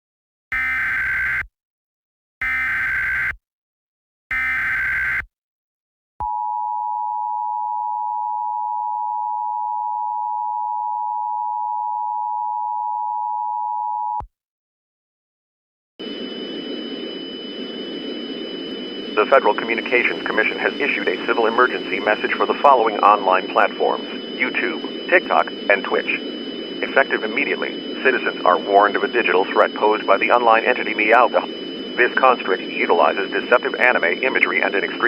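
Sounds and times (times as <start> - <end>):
buzzing data tones: 16.0 - 35.0
hiss with high whine: 18.7 - 35.0.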